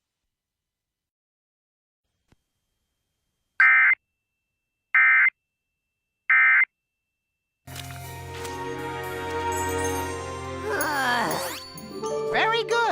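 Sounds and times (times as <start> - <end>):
music: 7.7 - 12.9.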